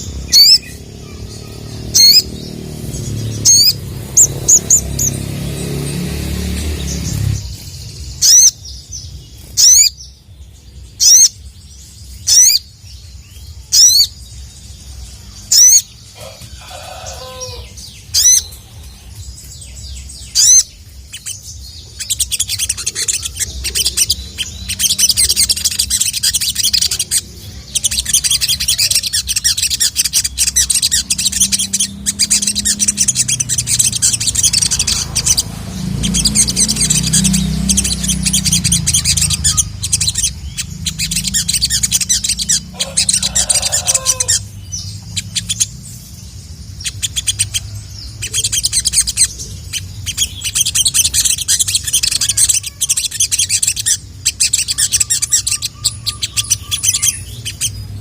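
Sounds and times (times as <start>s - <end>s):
bird giving sharp high calls: 0.0s - 5.6s, 8.2s - 8.6s, 20.3s - 44.6s
fast high chattering birdsong: 0.0s - 58.0s.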